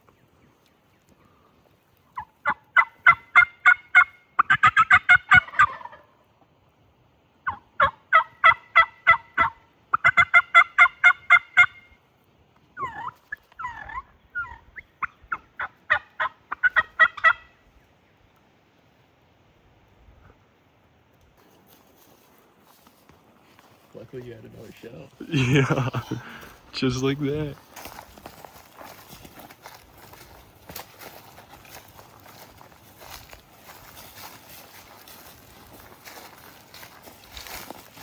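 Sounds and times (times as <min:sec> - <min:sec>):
turkey yelps: 0:02.2 - 0:06.1, 0:07.4 - 0:12.0, 0:12.8 - 0:17.6.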